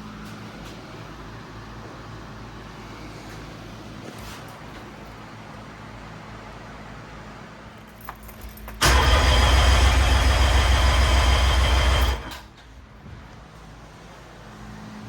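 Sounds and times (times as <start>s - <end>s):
outboard engine cranking: 8.8s - 12.5s.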